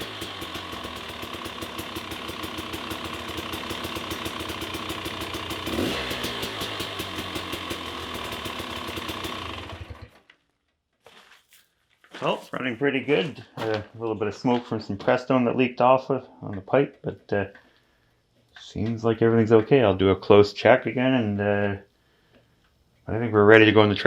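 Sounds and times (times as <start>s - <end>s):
dirt bike engine running: 0.0s - 10.2s.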